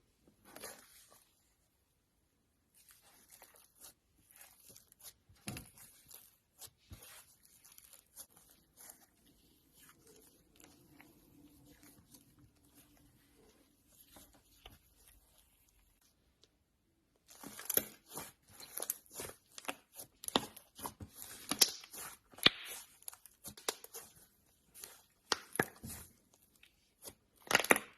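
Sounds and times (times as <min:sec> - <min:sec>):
slime crackling and popping: 0:17.3 - 0:26.0.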